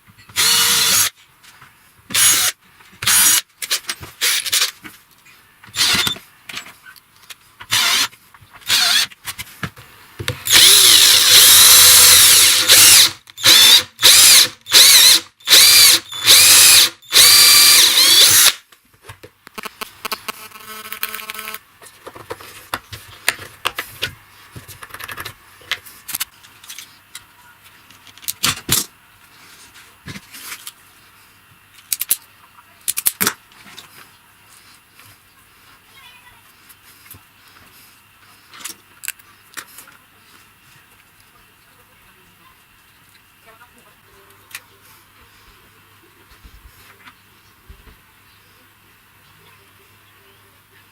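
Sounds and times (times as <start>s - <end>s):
power drill bursts: 0.3s - 1.1s, 2.1s - 3.4s, 5.8s - 6.2s, 7.7s - 8.1s, 8.7s - 9.1s, 10.4s - 18.6s.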